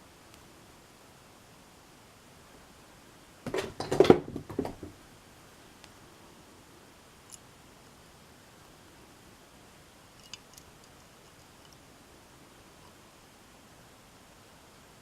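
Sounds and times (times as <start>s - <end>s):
faint ticks: 10.2s - 11.9s.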